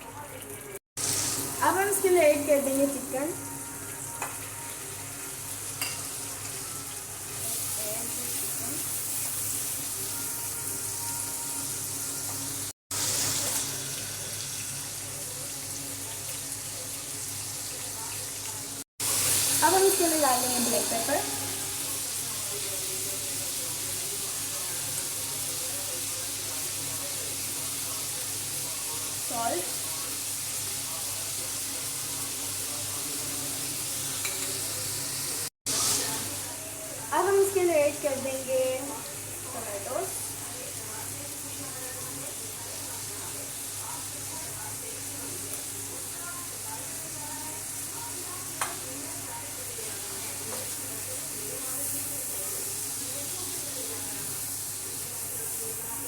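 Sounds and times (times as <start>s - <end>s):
chicken sizzling in oil: 0.0s - 56.0s
sharp tap on pan: 48.6s - 48.8s.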